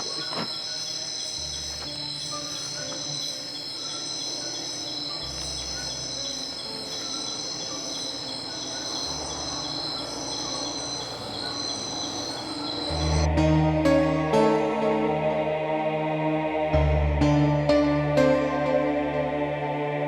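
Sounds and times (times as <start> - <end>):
crickets trilling: 0.0 - 13.3
pulsing high insect trill: 0.0 - 13.3.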